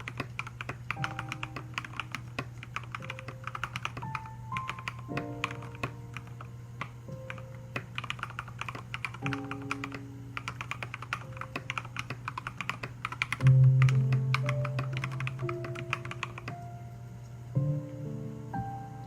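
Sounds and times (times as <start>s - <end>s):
mechanical keyboard typing: 0.0s - 16.6s
background music: 0.9s - 12.5s, 13.2s - 19.0s.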